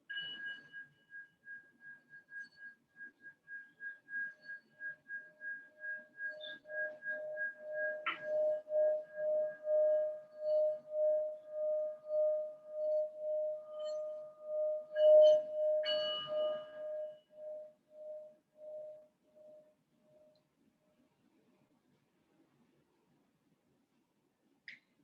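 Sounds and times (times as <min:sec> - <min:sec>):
singing bowl ringing: 0:00.1 - 0:19.7.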